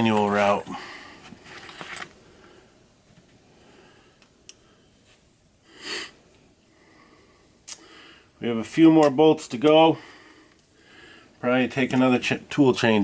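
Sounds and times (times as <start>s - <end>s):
breathy sniff: 5.7s - 6.2s.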